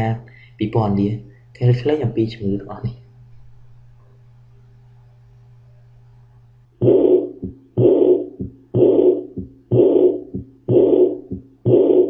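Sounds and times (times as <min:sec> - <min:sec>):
heartbeat thumps: 0:06.8 - 0:12.0
whooshing heart murmur: 0:06.8 - 0:12.0.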